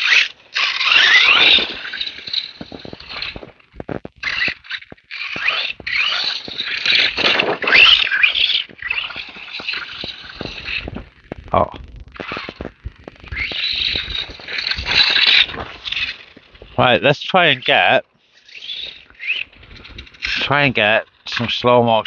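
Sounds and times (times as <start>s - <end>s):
electric motor whining: 0.0s - 16.8s
tyres scrabbling over rough ground: 0.0s - 22.0s.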